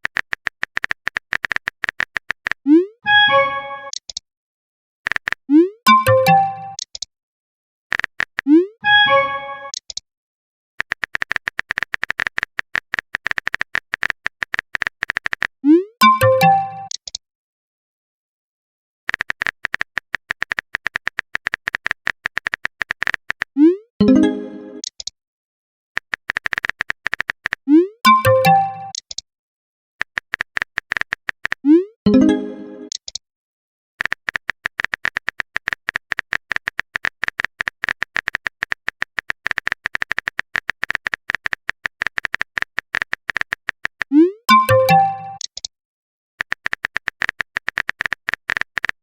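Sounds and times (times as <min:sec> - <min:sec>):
keyboard key clicks: 0:00.0 - 0:02.6, 0:05.1 - 0:05.4, 0:10.8 - 0:15.5, 0:19.1 - 0:23.5, 0:26.0 - 0:27.6, 0:30.0 - 0:31.6, 0:34.0 - 0:44.1, 0:46.4 - 0:49.0.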